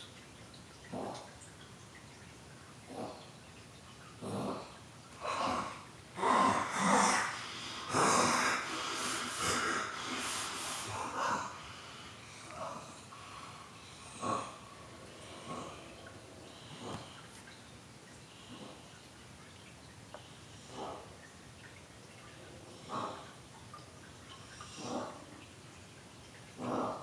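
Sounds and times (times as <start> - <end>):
man snoring through a wall: 4.2 - 11.6.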